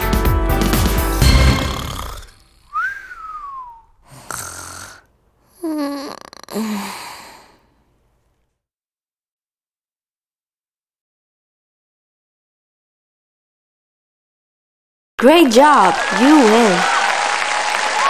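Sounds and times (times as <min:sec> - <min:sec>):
snoring: 0:01.3 - 0:02.7, 0:04.1 - 0:07.6
rasping breath in: 0:01.4 - 0:03.4, 0:04.0 - 0:05.1, 0:06.4 - 0:07.8
whistling tone: 0:02.7 - 0:04.0.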